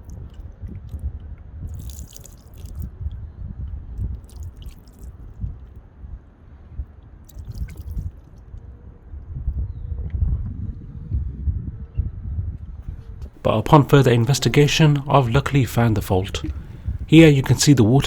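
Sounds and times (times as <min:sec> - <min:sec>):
water splashing on glass: 0:01.8 - 0:02.8, 0:07.3 - 0:08.1.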